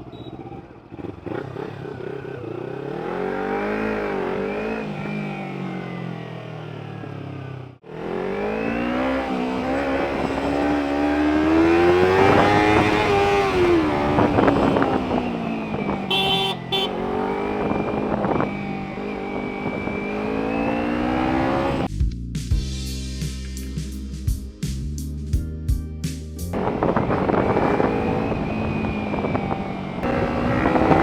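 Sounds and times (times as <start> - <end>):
motorcycle accelerating: 0.0 - 21.9, 26.5 - 31.0
background music with a beat: 21.9 - 26.6.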